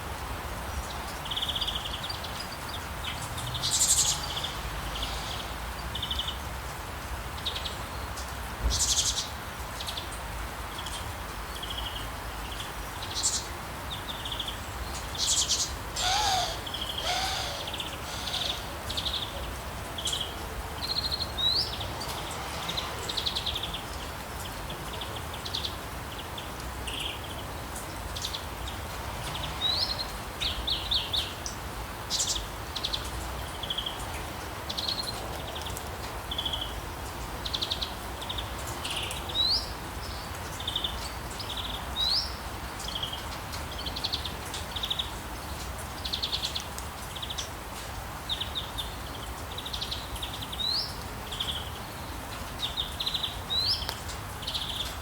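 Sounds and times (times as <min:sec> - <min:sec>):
songbirds chirping: 0:00.6 - 0:47.6, 0:48.2 - 0:55.0
low sliding bird call: 0:16.0 - 0:19.4.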